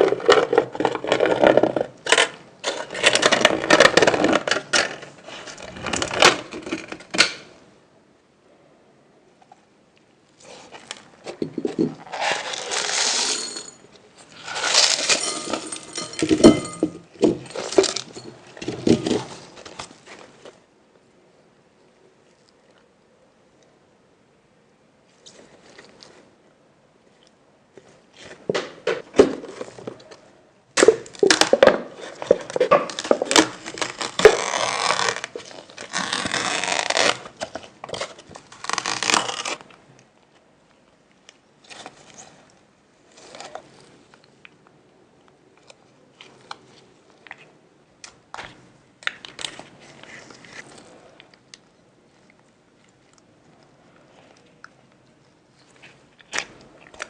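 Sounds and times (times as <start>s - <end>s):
crinkling and tearing packaging: 0.0s - 7.4s, 12.0s - 13.6s, 14.2s - 16.3s, 30.8s - 40.2s, 45.6s - 57.0s
clicks and rustles: 10.3s - 20.6s.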